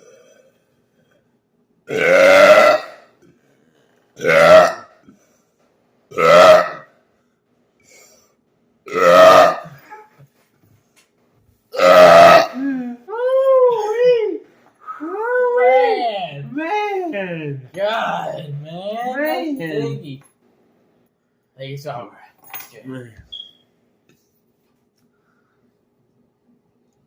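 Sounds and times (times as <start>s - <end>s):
man burping: 0.0s - 0.7s, 1.9s - 3.4s, 4.2s - 5.2s, 6.1s - 6.9s, 8.9s - 10.1s, 11.7s - 13.1s.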